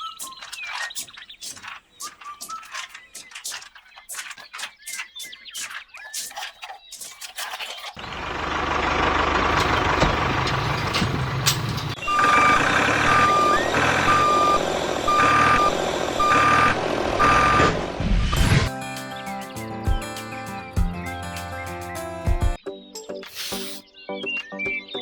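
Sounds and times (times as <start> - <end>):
engine running: 8.0 - 19.8
reversing alarm beeps: 12.0 - 18.7.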